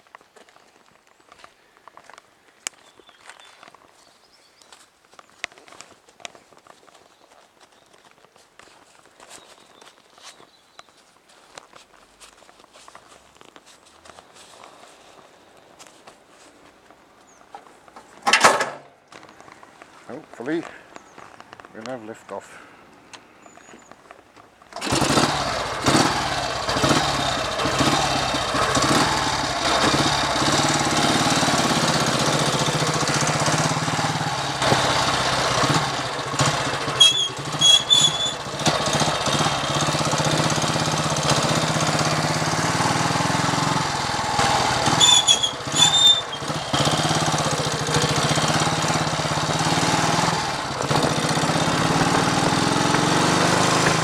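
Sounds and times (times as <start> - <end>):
motorcycle engine running: 24.8 - 54.0.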